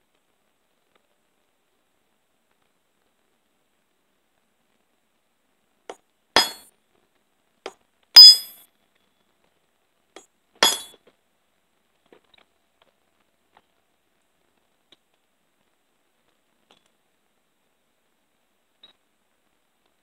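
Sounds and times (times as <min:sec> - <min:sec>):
hammer clinking on steel: 0:06.4 - 0:06.6, 0:08.2 - 0:08.6, 0:10.6 - 0:10.9.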